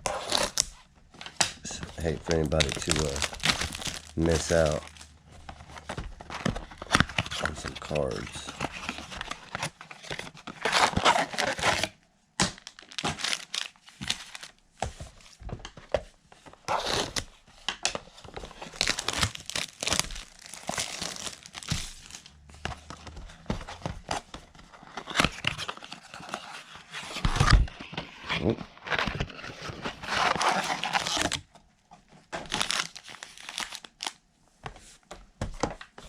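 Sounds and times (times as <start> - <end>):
plastic wrapping crinkling and tearing: 0.1 - 0.8, 1.6 - 14.6, 18.4 - 23.2, 27.3 - 31.5, 32.4 - 34.2.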